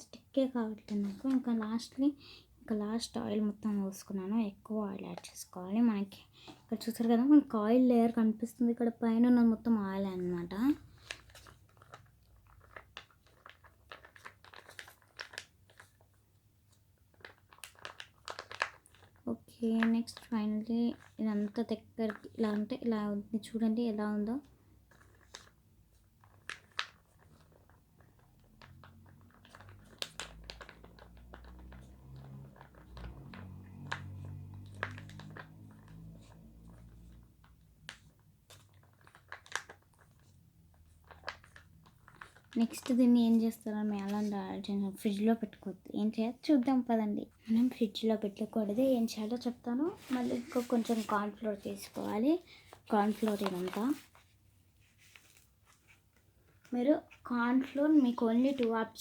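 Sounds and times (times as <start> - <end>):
wet slime squelches: 24.0 - 59.0.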